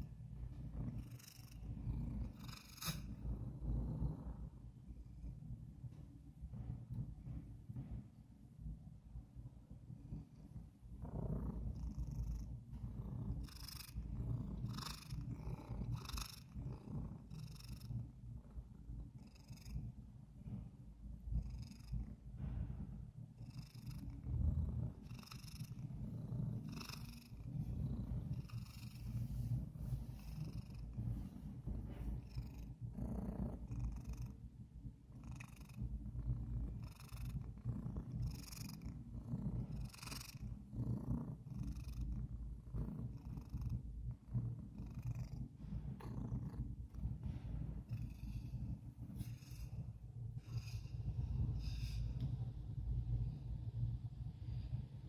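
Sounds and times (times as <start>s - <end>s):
cat purring: 0.0s - 8.3s, 9.2s - 55.0s
cat's rasping breath: 45.6s - 52.4s.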